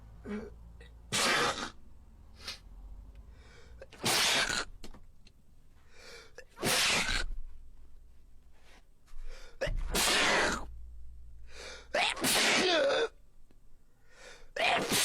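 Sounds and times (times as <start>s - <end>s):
person sneezing: 1.1s - 1.8s, 3.8s - 4.7s, 6.4s - 7.4s, 9.6s - 10.7s, 11.6s - 13.2s, 14.5s - 15.0s
faint short breaths: 2.4s - 3.8s.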